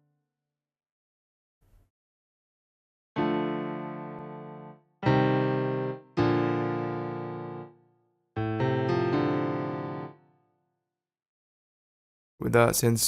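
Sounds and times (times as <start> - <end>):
electric piano chords: 3.2 - 10.4.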